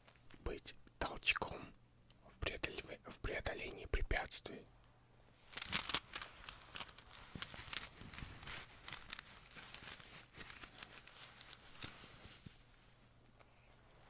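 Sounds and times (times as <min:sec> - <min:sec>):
light rustling: 0:05.4 - 0:14.0.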